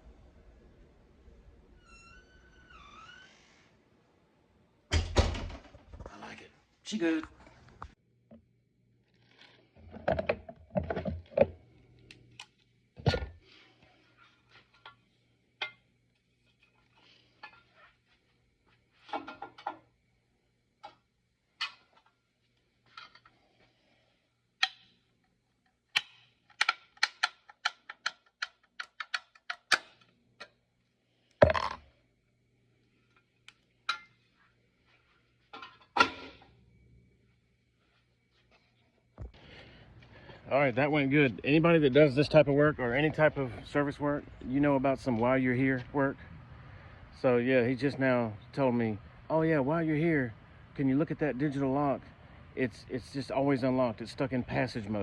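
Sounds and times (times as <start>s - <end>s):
hand tools knocking and clinking: 33.9s - 34.2s.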